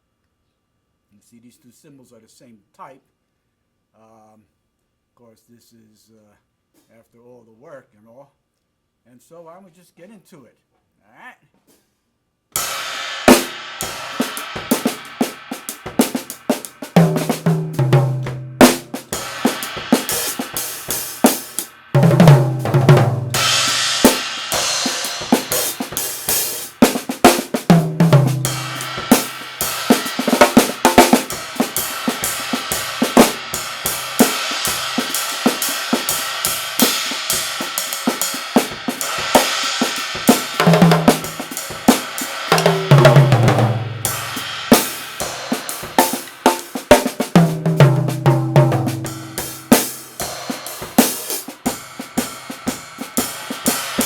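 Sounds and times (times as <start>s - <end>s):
ringing cymbal wash: 12.6s - 47.2s, 48.9s - 54.0s
drum kit groove: 12.6s - 54.0s
low-pitched drum fills: 12.6s - 54.0s.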